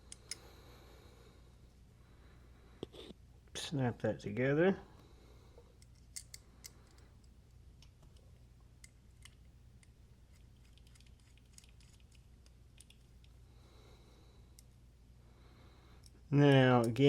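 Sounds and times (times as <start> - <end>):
small metal clicks of knife parts: 0.0 - 0.5, 5.8 - 7.4
low background hum: 0.0 - 17.0.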